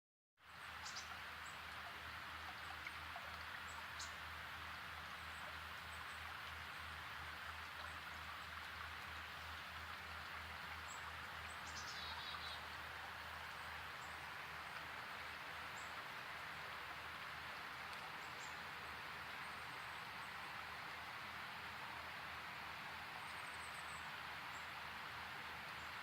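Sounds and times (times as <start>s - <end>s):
faint high bird chirps: 11.5s - 12.7s.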